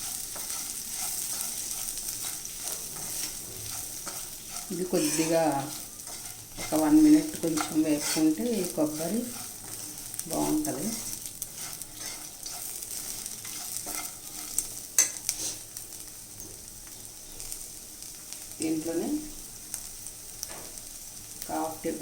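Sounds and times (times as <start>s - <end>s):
utensil scraping and tapping pan: 0.0s - 9.8s, 11.6s - 12.8s, 13.4s - 15.2s
beans sizzling in a pan: 0.0s - 22.0s.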